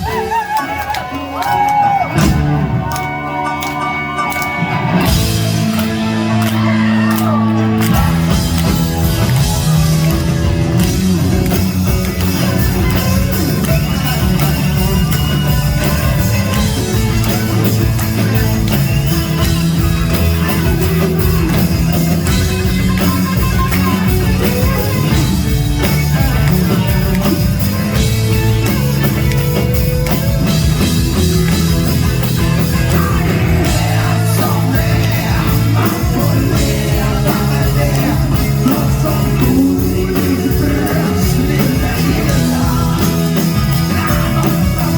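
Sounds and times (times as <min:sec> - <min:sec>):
rock band playing: 0:00.0 - 0:44.9
man singing: 0:32.4 - 0:44.9.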